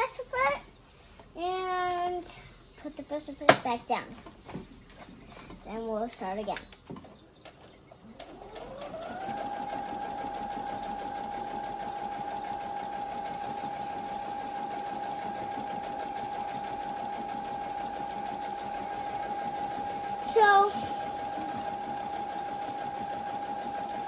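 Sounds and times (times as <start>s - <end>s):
sewing machine motor whine: 7.6s - 24.0s.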